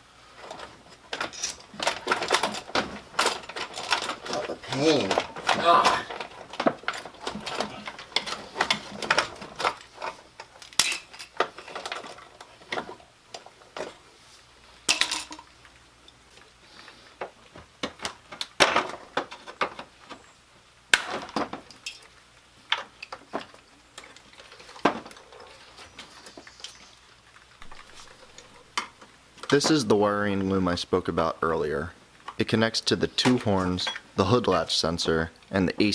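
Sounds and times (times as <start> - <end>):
metal tools clinking: 1.1 - 12.9.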